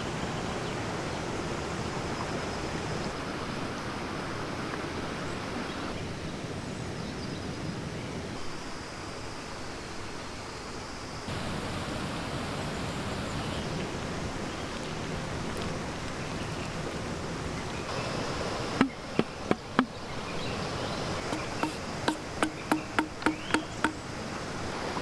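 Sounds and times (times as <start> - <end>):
river water flowing over rocks: 11.3 - 25.0.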